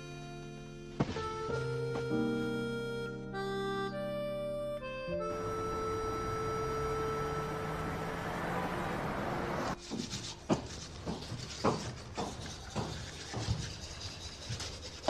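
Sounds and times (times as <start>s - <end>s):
background music: 0.0s - 9.7s.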